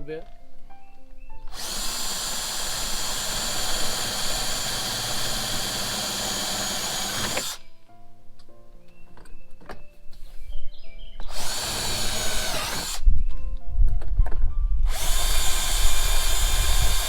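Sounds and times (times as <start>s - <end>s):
power drill boring through plastic: 1.5s - 7.7s, 11.2s - 13.1s, 14.8s - 17.0s.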